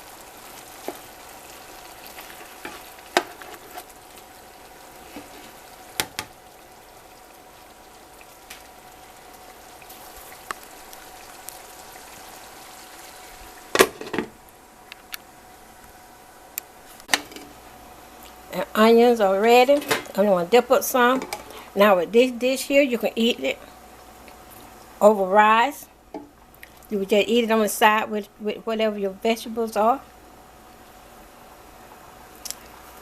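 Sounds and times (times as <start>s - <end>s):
sausage sizzling in frying pan: 0.0s - 27.9s.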